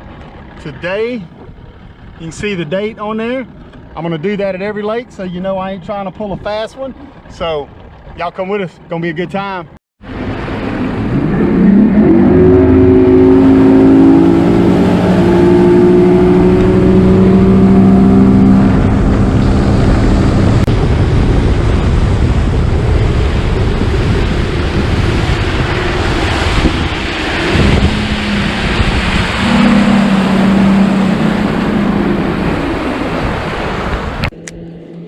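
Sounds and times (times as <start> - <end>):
outboard motor accelerating: 0.0 - 35.0
water rushing: 9.4 - 34.6
wind rushing: 10.0 - 34.3.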